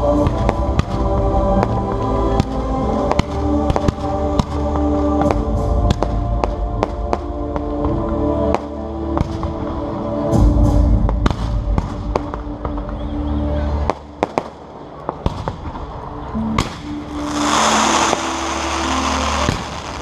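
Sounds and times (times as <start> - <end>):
music from loudspeakers: 16.3 - 20.0
fireworks bursting: 16.6 - 20.0
dense loud hissing: 17.2 - 20.0.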